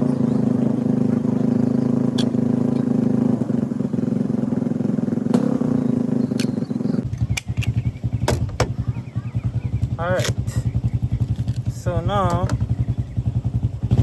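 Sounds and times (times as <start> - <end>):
sharp clicks: 6.3 - 8.4.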